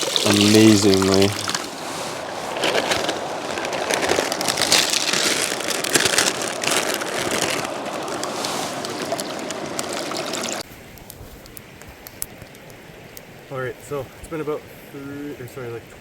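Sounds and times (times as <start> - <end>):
river water rushing and splashing: 0.0 - 10.6.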